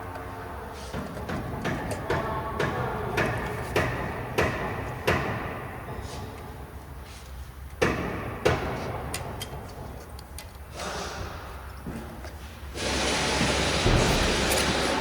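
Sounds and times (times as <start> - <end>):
sharp thuds: 13.8 - 14.7.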